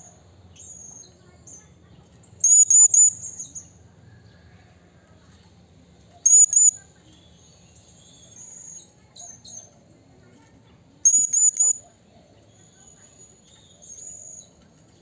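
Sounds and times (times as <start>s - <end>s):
parrot calling with shrill notes: 2.4s - 3.3s, 6.2s - 6.8s, 11.1s - 11.8s.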